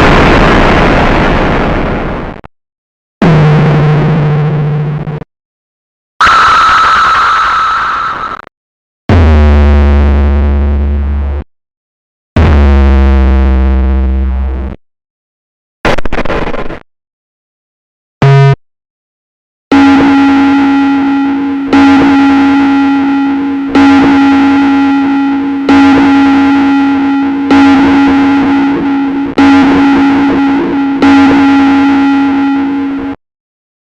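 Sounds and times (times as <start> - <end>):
distorted instrument note: 0.0 - 2.4, 19.7 - 33.2
electronic blip: 6.2 - 8.5, 19.8 - 32.8.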